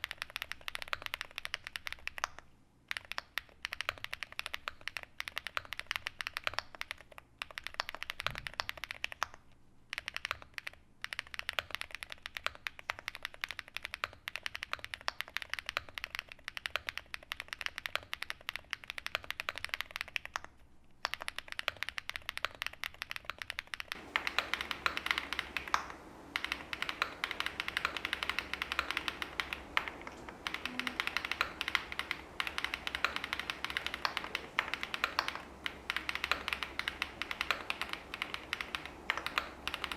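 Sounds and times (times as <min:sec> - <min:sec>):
mechanical keyboard typing: 0:00.0 - 0:39.9
low hum: 0:24.0 - 0:39.9.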